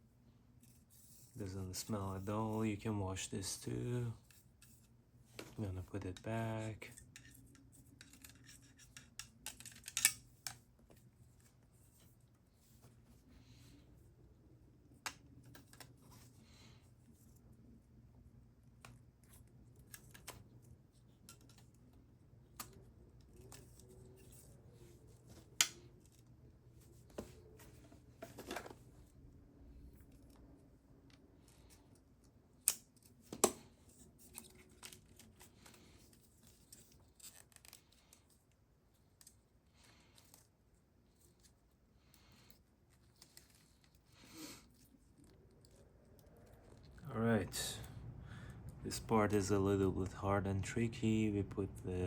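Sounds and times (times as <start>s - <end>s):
plastic parts clicking and scraping: 4.2s - 12.1s, 18.8s - 26.3s, 31.1s - 47.0s.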